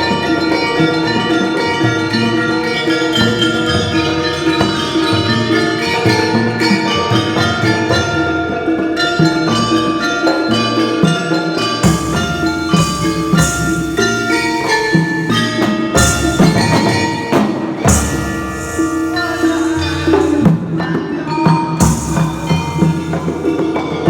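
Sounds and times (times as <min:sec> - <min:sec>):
gamelan ensemble playing: 0:00.0 - 0:24.0
metallophone notes: 0:00.0 - 0:24.0
drum strokes: 0:11.6 - 0:24.0
gong notes: 0:11.8 - 0:20.6, 0:21.8 - 0:23.5.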